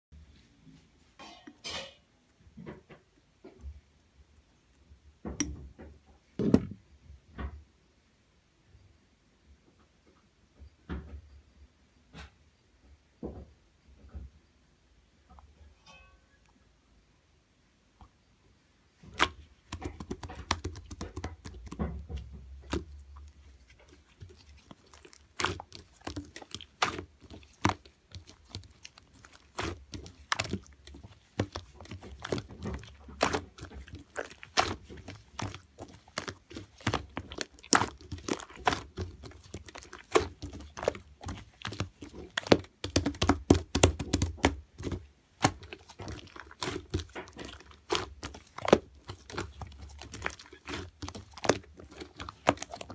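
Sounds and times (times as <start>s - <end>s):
crunching and clicking: 19.2s - 52.9s.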